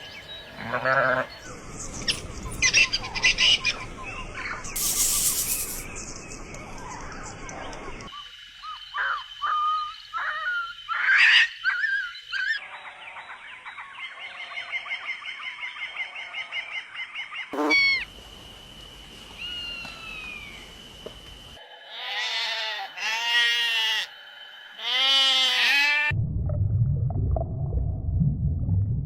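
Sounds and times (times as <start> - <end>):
drawn-out animal calls: 0.6 - 1.4, 17.6 - 18.1, 21.9 - 24.1
repeated bird chirps: 4.7 - 6.5, 17.6 - 18.0.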